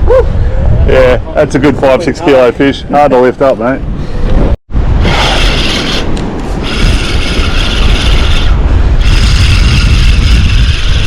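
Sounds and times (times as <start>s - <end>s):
wind buffeting microphone: 0.0s - 11.0s
hissing rush: 5.0s - 11.0s.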